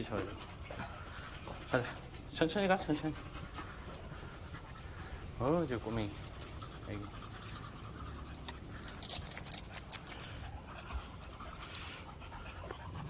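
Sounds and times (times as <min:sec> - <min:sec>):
dog panting: 0:00.0 - 0:13.0
high clicks and jingles: 0:08.8 - 0:10.5.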